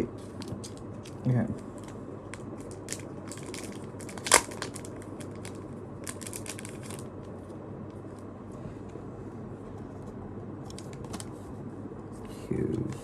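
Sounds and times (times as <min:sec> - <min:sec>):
plastic packaging crinkling: 0:00.2 - 0:07.1, 0:10.7 - 0:11.3.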